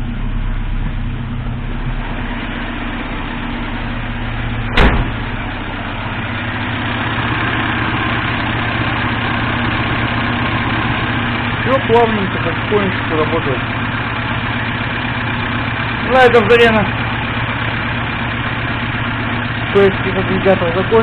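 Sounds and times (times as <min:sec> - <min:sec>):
car engine idling: 0:00.0 - 0:21.0
sharp knock: 0:04.7 - 0:05.3.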